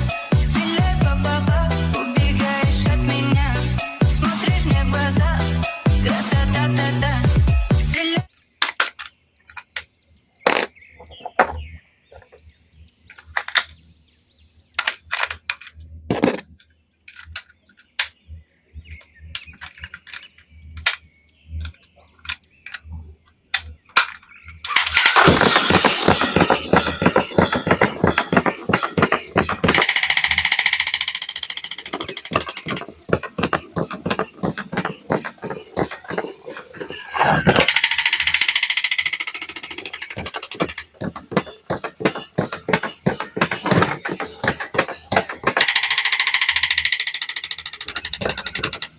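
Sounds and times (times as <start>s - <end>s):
plastic toy clicks and knocks: 8.6s - 12.3s, 13.1s - 13.8s, 14.8s - 18.2s, 23.5s - 33.6s, 37.4s - 48.9s
rapid rattling and scraping: 24.7s - 48.9s.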